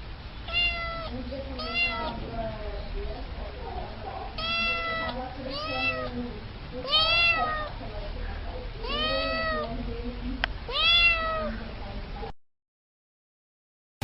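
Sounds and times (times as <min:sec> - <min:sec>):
cat meowing: 0:00.5 - 0:02.2, 0:04.3 - 0:06.2, 0:06.8 - 0:07.8, 0:08.8 - 0:09.7, 0:10.7 - 0:11.5.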